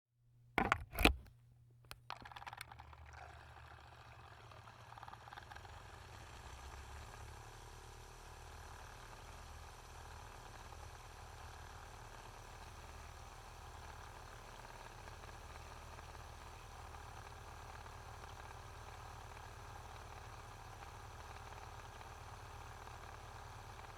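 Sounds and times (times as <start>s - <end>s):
milk frother clicks: 0.6s - 1.3s, 1.9s - 3.3s
milk frother whisk humming: 2.1s - 6.0s.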